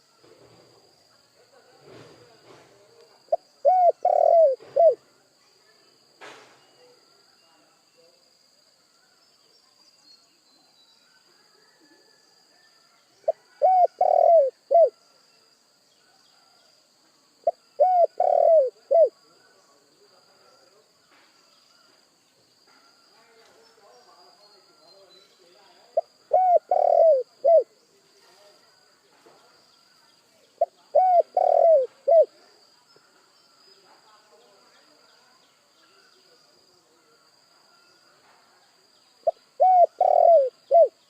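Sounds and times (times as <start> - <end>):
dove cooing: 3.3 - 5.0, 13.3 - 15.0, 17.5 - 19.2, 26.0 - 27.7, 30.6 - 32.4, 39.2 - 41.0.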